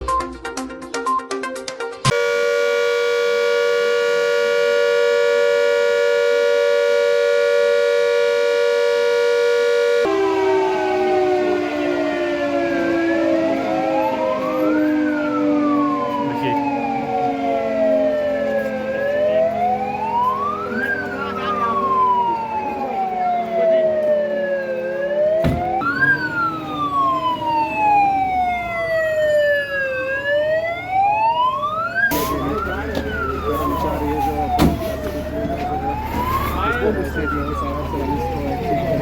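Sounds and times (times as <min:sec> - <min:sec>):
warning siren wailing: 0:02.1 - 0:39.0.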